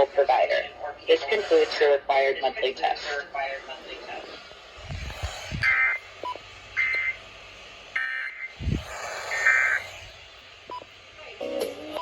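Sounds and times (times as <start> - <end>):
buzzy digital tone bursts: 8.0 - 10.4.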